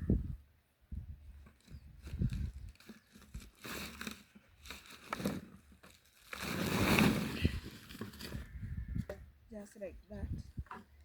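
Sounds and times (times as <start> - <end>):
sack rustling and crunching: 2.0 - 8.5.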